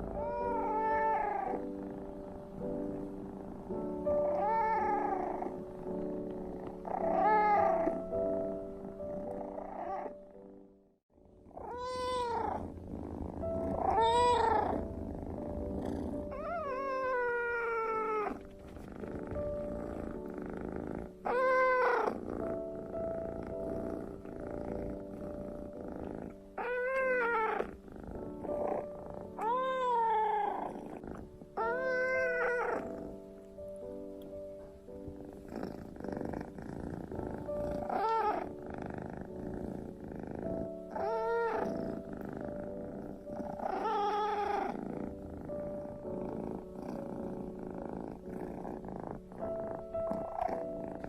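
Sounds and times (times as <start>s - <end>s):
low purr: 0.0s - 51.0s
kitten meowing: 11.6s - 12.6s, 13.7s - 14.8s, 16.3s - 18.5s, 21.3s - 22.1s, 26.6s - 27.7s, 29.4s - 30.7s, 31.6s - 32.9s, 41.0s - 41.7s.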